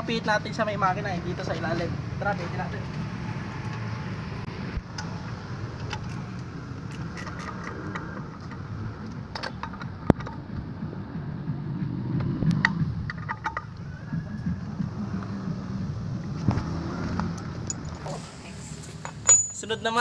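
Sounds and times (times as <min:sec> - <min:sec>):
steady low rumble: 0:04.1 - 0:19.3
socket wrench clicking on bolts: 0:05.8 - 0:10.4.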